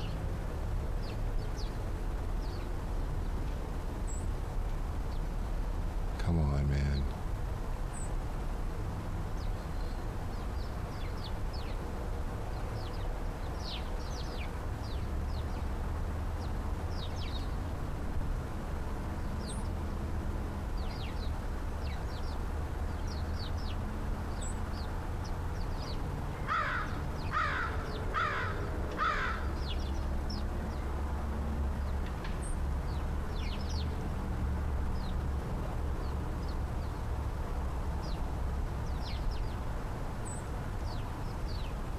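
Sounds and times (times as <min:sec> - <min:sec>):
small birds chirping: 0:00.0 - 0:41.9
crow cawing: 0:26.4 - 0:29.6.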